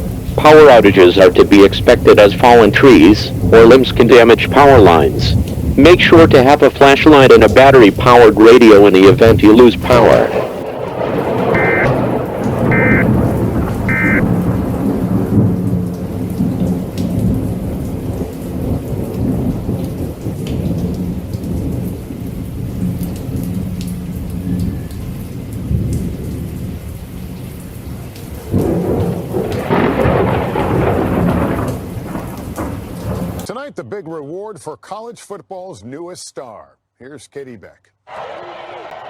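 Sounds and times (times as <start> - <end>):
steady rain: 0.0 - 33.7
rolling thunder: 10.0 - 24.7, 28.3 - 33.5
buzzy data-tone bursts: 11.6 - 11.9, 12.7 - 13.0, 13.9 - 14.3.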